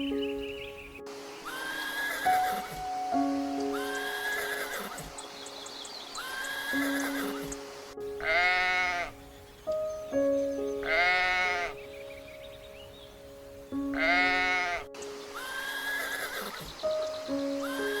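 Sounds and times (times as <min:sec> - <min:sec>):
background music with held notes: 0:00.0 - 0:18.0
farm animal bleating: 0:01.5 - 0:02.8, 0:03.8 - 0:05.1, 0:08.2 - 0:09.2, 0:10.8 - 0:11.7, 0:13.9 - 0:16.6.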